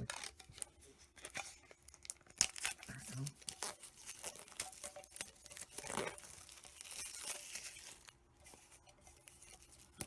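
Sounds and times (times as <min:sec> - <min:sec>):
packaging torn and crinkled: 0:00.0 - 0:08.2.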